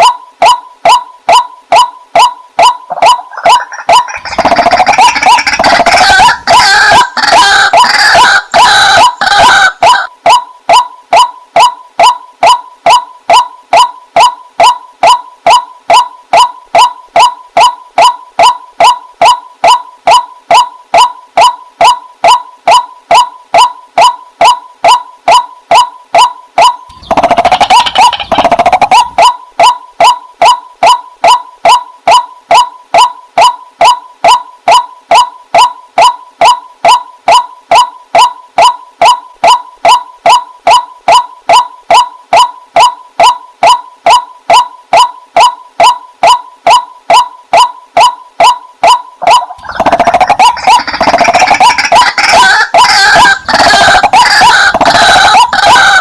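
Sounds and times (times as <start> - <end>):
water hen calling: 1.3 - 10.4, 48.9 - 56.0.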